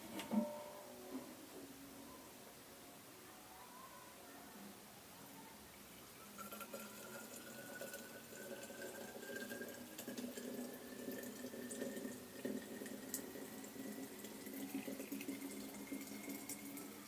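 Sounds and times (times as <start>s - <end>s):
water pouring into container: 6.2s - 17.0s.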